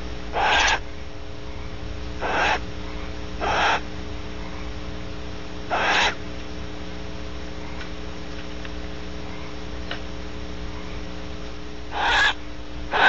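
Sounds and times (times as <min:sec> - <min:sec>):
electrical hum: 0:00.0 - 0:13.0
owl hoarse wheeze: 0:00.3 - 0:03.8, 0:05.7 - 0:06.2, 0:11.9 - 0:13.0.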